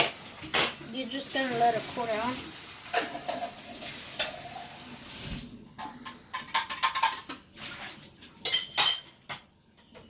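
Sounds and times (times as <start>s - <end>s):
utensils clinking against dishes: 0.0s - 0.8s, 2.9s - 4.7s, 8.4s - 10.0s.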